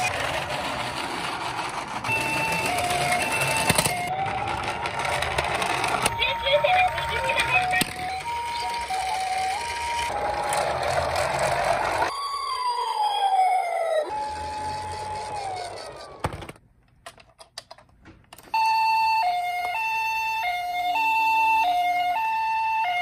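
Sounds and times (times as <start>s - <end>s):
two-tone hi-lo siren: 2.0s - 16.2s, 18.5s - 23.0s
toy siren wailing: 2.0s - 16.3s, 18.5s - 23.0s.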